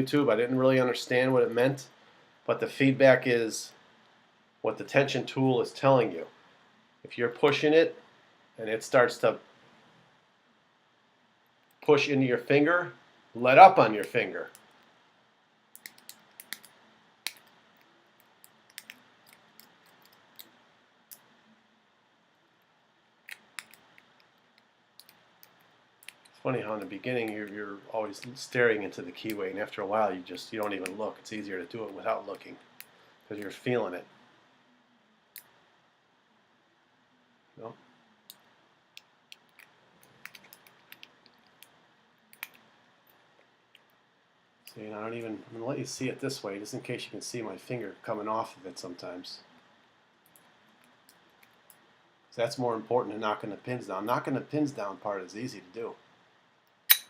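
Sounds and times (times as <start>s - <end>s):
lock pick metallic clicks: 42.3s - 42.6s, 56.7s - 57.0s.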